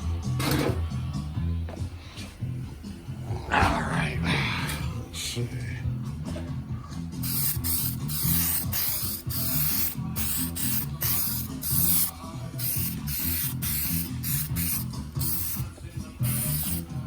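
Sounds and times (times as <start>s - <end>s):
background music: 0.0s - 17.0s
spray gun hissing: 7.2s - 17.0s.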